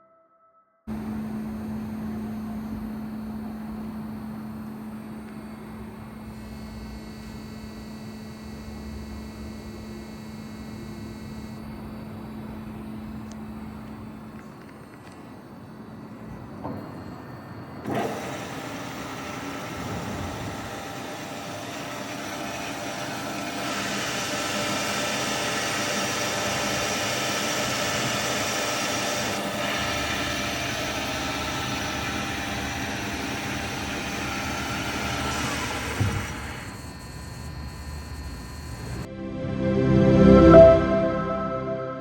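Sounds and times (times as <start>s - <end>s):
band saw running: 17.8s - 39.1s.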